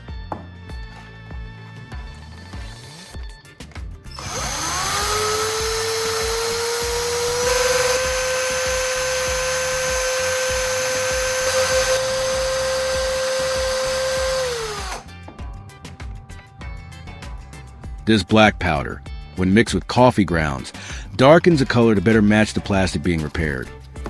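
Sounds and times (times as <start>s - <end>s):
power tool motor whining: 4.1s - 15.1s.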